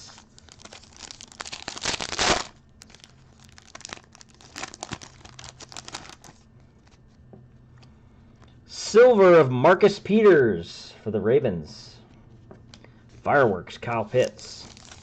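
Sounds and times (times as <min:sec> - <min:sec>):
card pack wrapper crinkling and tearing: 0:00.0 - 0:06.5, 0:14.2 - 0:15.0.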